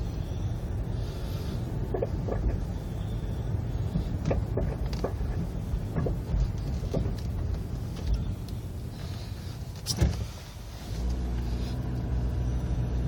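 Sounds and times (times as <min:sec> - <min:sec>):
car engine running: 0:00.0 - 0:13.0
car clicking noise: 0:01.7 - 0:02.8, 0:03.5 - 0:10.4.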